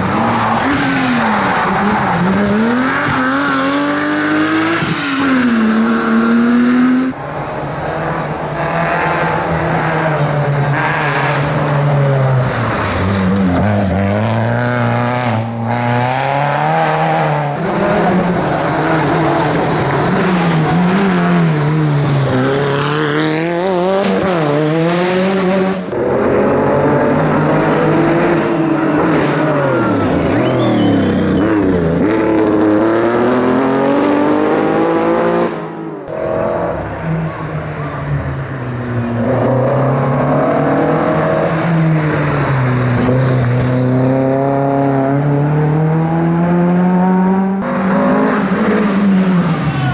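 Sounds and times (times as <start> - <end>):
rally car engines revving: 0.0 - 49.9
tyre squeal: 29.4 - 32.3.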